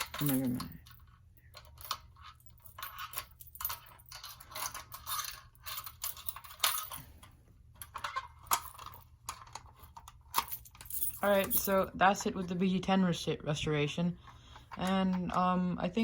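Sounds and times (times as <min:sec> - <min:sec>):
small metallic clicks and rattles: 0:00.0 - 0:11.8.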